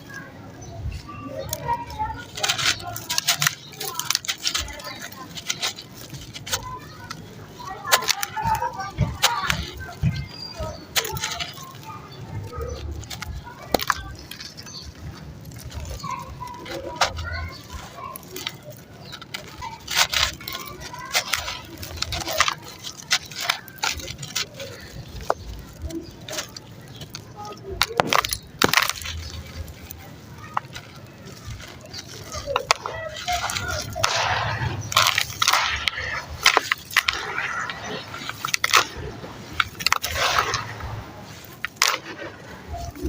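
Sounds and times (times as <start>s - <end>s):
cement chunks crumbling in water: 0.9s - 43.0s.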